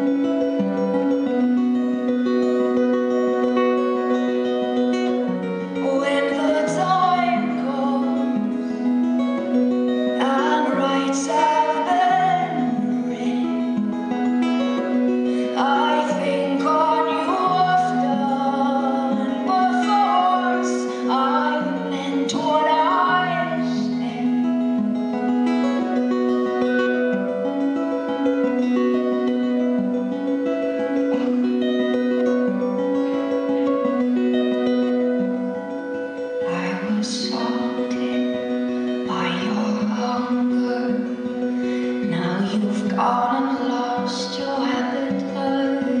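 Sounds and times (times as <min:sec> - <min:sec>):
plucked guitar accompaniment: 0:00.0 - 0:46.0
woman singing: 0:04.1 - 0:25.6, 0:36.4 - 0:46.0.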